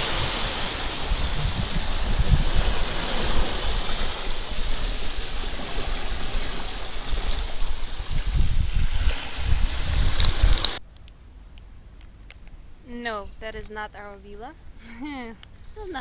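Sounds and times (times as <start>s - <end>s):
sea waves washing onto beach: 0.0s - 10.8s
wind buffeting microphone: 0.0s - 10.8s.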